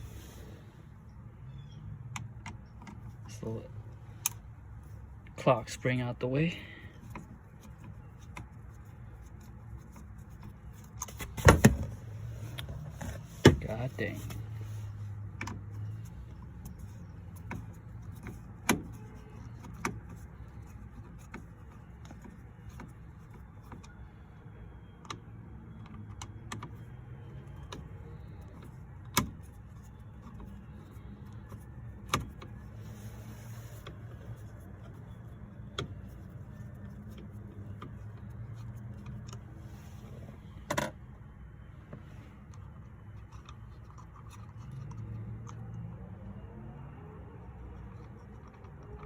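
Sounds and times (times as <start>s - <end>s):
tools and plastic parts clicking: 33.7s - 39.6s, 47.7s - 49.0s.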